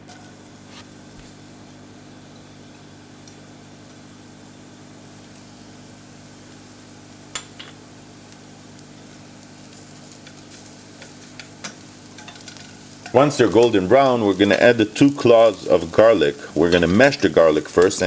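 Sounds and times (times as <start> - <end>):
onions sizzling in oil: 0.0 - 18.0.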